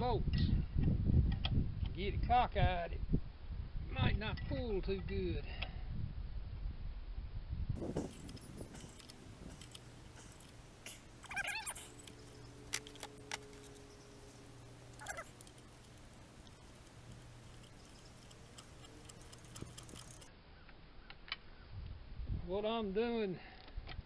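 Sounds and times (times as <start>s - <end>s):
low hum: 7.4s - 22.4s
wavering squeal-like calls: 10.2s - 15.4s.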